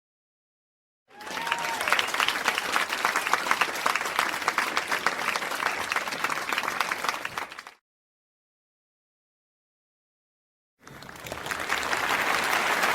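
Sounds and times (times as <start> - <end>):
audience applause: 1.1 - 7.8, 10.8 - 12.9.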